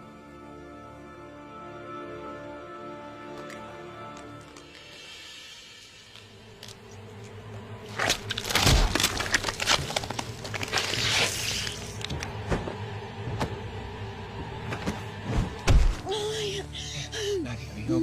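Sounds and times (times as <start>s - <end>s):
low music drone: 0.0s - 18.0s
harsh hissing noise: 10.9s - 12.0s
thuds and crashing impacts: 14.8s - 16.0s.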